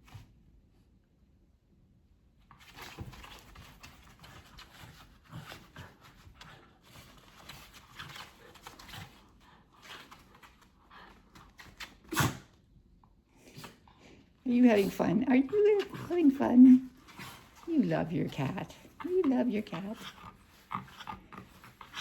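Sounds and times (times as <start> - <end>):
animals scuffling play-fighting: 2.5 - 12.5, 14.6 - 22.0.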